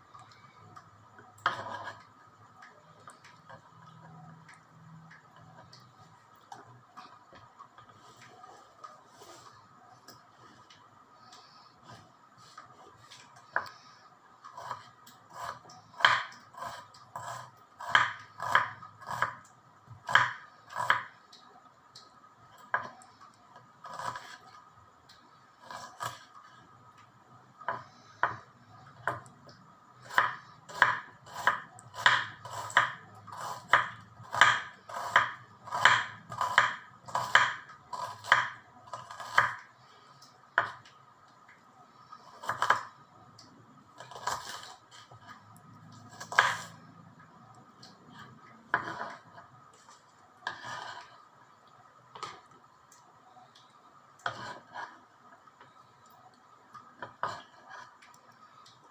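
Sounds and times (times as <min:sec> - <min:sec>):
knife chopping on cutting board: 0:15.4 - 0:19.4, 0:20.1 - 0:21.1, 0:30.0 - 0:39.6, 0:42.4 - 0:42.9, 0:46.1 - 0:46.7, 0:48.7 - 0:49.2.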